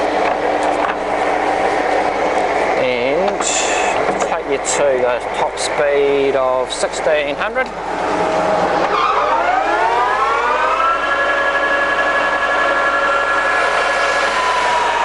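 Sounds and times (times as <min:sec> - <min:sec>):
lathe spindle whine: 0:07.7 - 0:15.0.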